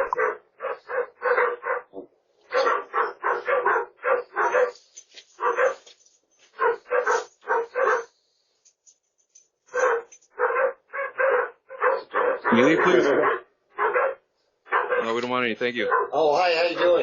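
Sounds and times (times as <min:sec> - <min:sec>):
dog barking rapidly: 0:00.0 - 0:01.9, 0:02.5 - 0:04.8, 0:05.4 - 0:05.9, 0:06.6 - 0:08.1, 0:09.7 - 0:15.2, 0:15.8 - 0:17.0.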